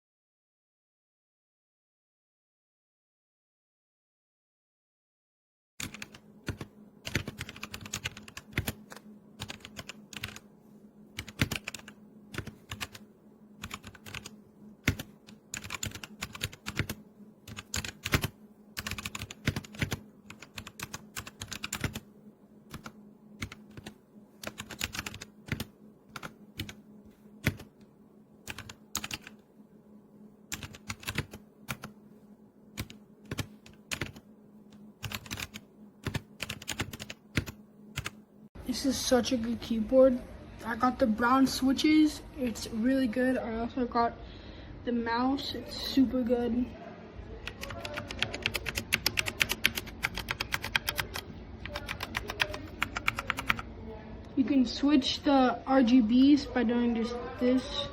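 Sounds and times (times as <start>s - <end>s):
faint steady hum: 5.8s - 57.9s
mechanical keyboard key clacks: 47.5s - 53.6s.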